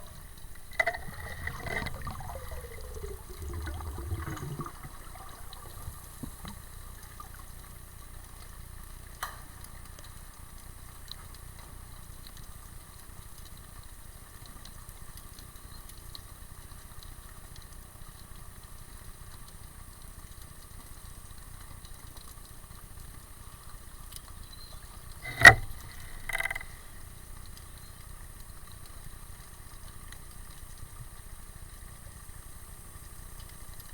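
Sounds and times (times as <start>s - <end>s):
muffled underwater hiss: 0.0s - 8.8s, 25.2s - 33.8s.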